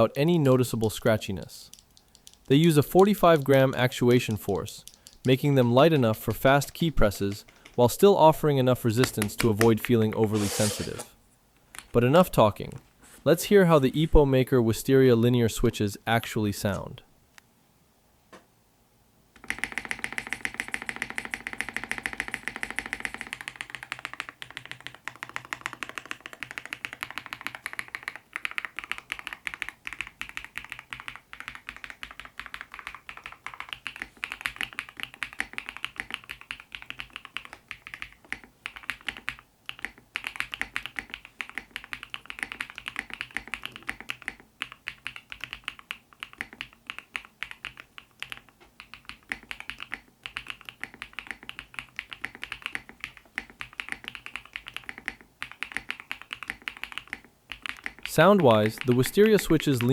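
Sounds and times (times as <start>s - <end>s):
mechanical keyboard typing: 1.7s - 3.7s, 9.0s - 11.0s, 19.4s - 59.9s.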